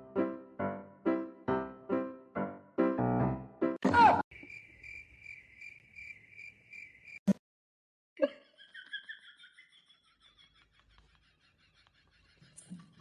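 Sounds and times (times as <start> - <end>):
cricket chirping: 4.3 - 7.2
insect-like chirping: 4.3 - 7.2.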